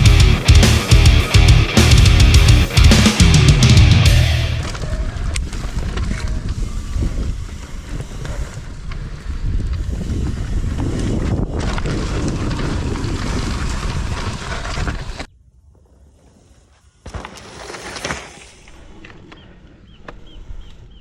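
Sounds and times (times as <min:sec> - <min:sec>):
bike tyre noise on dirt: 0:00.0 - 0:21.0
wind buffeting microphone: 0:04.6 - 0:15.3
bike knocking over rough ground: 0:17.0 - 0:18.5.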